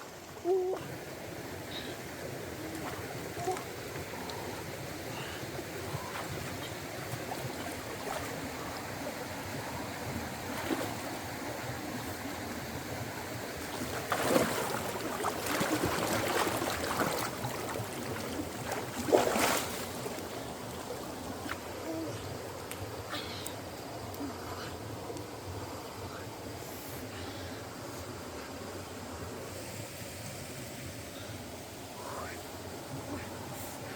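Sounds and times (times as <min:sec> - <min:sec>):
stream water running: 0:00.0 - 0:33.9
water splashing: 0:01.7 - 0:12.1, 0:13.4 - 0:22.9.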